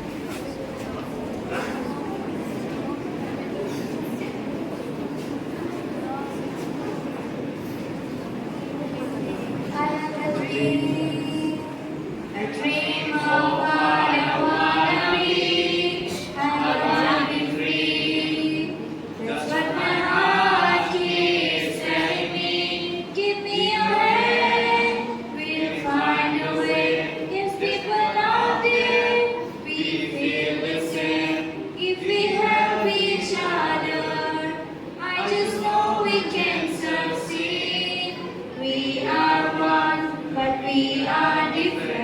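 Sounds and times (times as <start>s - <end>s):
choir of students singing: 10.2s - 42.0s.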